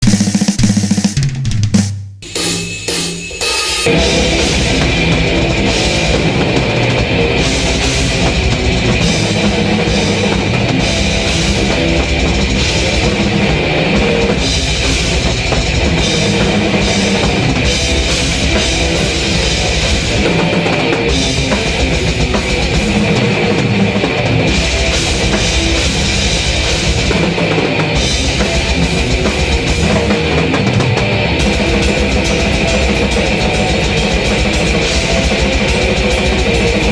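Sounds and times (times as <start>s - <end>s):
drum kit: 0.0s - 36.9s
heavy metal song: 2.2s - 36.9s.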